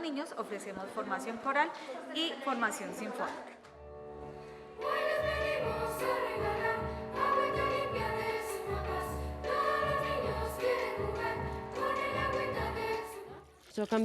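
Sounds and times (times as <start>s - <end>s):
instrumental accompaniment: 3.7s - 13.4s
children's choir singing: 4.4s - 13.5s.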